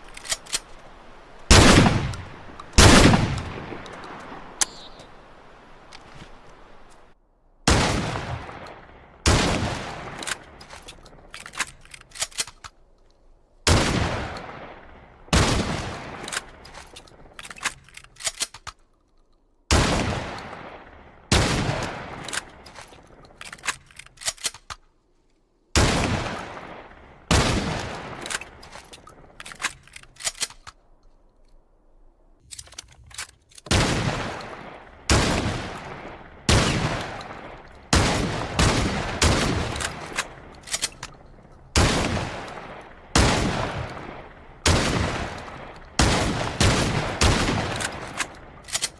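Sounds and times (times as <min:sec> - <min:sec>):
shotgun blasts: 0:01.5 - 0:03.9, 0:07.7 - 0:10.4, 0:19.7 - 0:22.6, 0:25.8 - 0:28.6, 0:33.7 - 0:40.5, 0:41.8 - 0:48.6.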